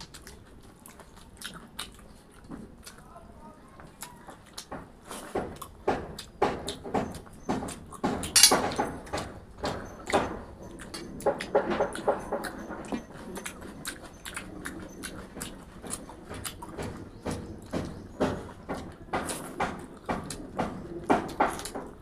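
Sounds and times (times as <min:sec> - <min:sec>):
crunching and smacking while chewing: 0:00.0 - 0:22.0.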